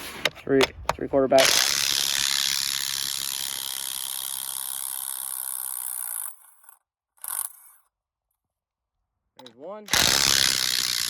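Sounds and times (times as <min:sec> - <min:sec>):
impact wrench hammering: 0:09.9 - 0:11.0.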